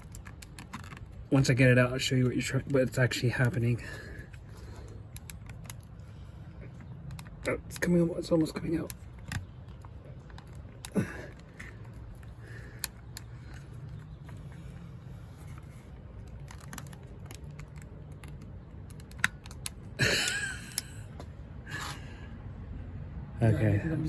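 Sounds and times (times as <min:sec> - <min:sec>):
paper clip clicks and scratches: 0:00.0 - 0:01.5, 0:04.6 - 0:06.0, 0:15.4 - 0:19.9.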